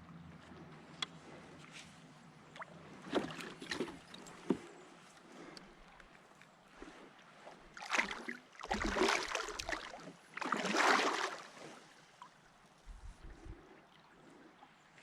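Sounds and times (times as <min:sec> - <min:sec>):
water splashing from kayak: 0:02.5 - 0:05.8, 0:06.7 - 0:14.4.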